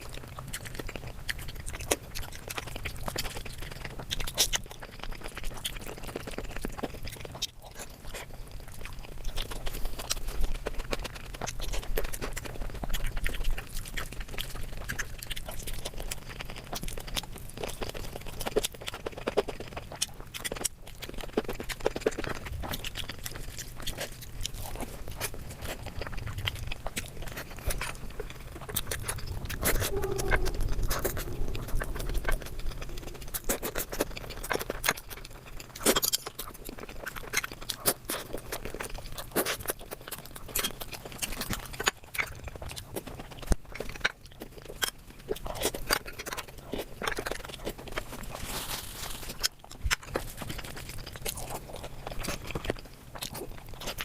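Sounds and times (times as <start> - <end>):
chewing and crunching: 0.0 - 54.0
wet mouth clicks: 10.0 - 47.7.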